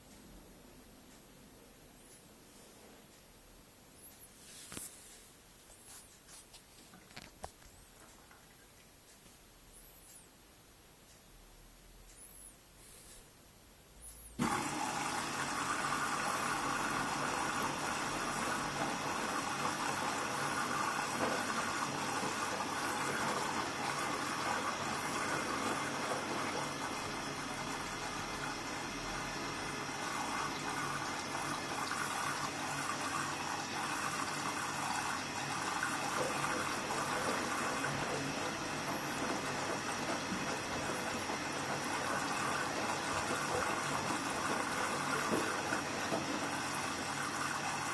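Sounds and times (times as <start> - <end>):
washing machine filling with water: 14.4 - 47.9.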